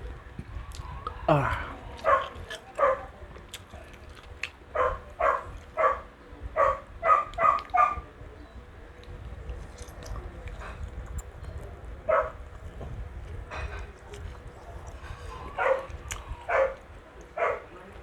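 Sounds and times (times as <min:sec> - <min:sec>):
dog barking: 0:02.0 - 0:03.1, 0:04.7 - 0:08.0, 0:12.1 - 0:12.4, 0:15.4 - 0:17.8.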